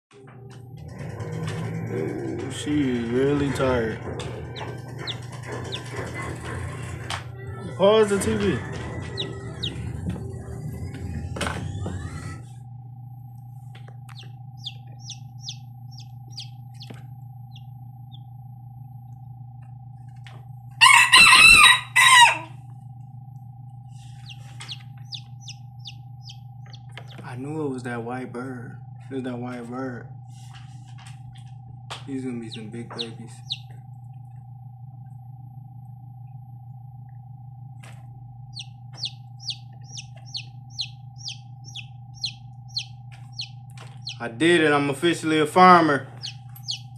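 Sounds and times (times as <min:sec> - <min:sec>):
incubator humming: 0:00.1 - 0:46.9
chick peeping: 0:04.3 - 0:06.4, 0:08.2 - 0:11.1, 0:14.1 - 0:18.3, 0:24.2 - 0:27.2, 0:32.5 - 0:33.7, 0:38.5 - 0:44.3, 0:46.1 - 0:46.9.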